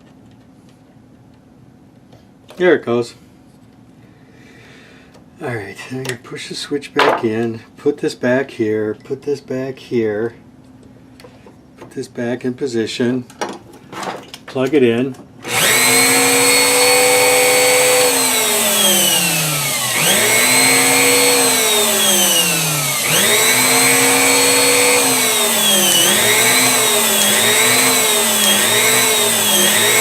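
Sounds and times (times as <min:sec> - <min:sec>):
router motor whining: 0:15.4 - 0:30.0.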